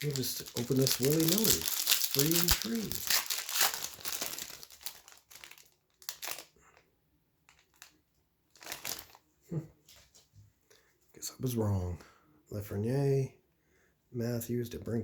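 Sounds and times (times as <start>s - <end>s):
wrapper crinkling: 0.0s - 6.6s, 7.5s - 9.2s.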